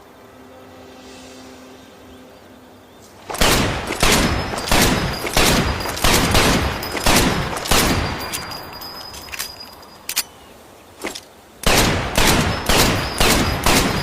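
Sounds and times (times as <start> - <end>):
pistol shots with echo: 3.3 - 8.6, 11.6 - 14.0.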